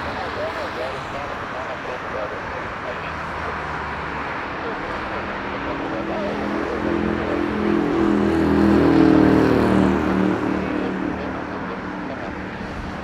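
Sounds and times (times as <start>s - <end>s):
aircraft engines passing: 0.0s - 13.0s.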